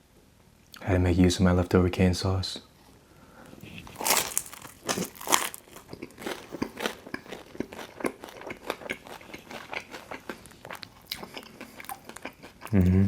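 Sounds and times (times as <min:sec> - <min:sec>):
crisp chewing crunches: 0:03.7 - 0:12.8
crunchy pizza bite: 0:03.7 - 0:13.0.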